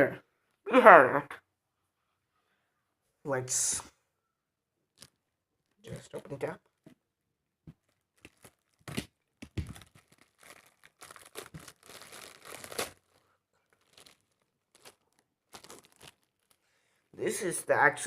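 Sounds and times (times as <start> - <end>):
packaging tearing and crinkling: 7.8 - 16.6.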